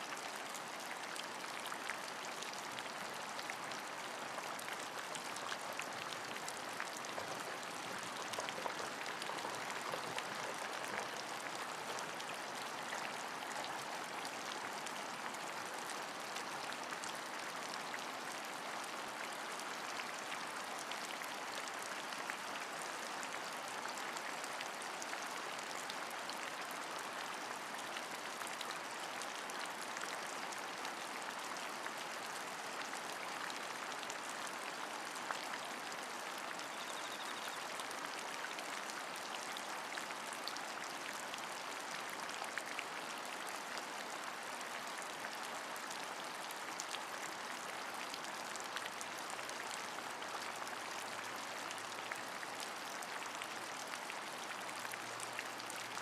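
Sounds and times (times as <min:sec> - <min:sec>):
steady rain: 0:00.0 - 0:56.0
rain drop ticks: 0:06.8 - 0:12.6.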